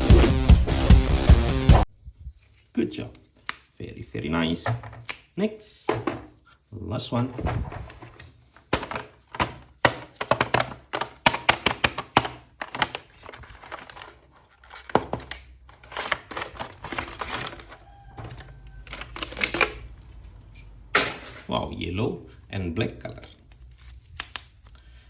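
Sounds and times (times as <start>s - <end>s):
plastic clicks and taps: 8.8s - 13.0s.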